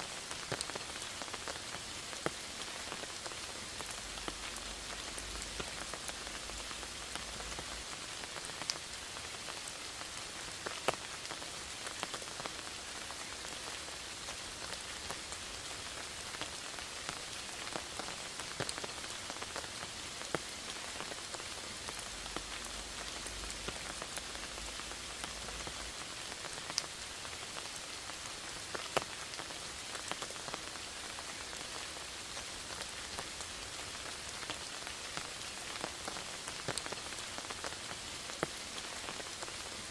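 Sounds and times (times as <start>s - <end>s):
rain hissing in forest: 0.0s - 39.9s
raindrops ticking nearby: 0.1s - 39.9s.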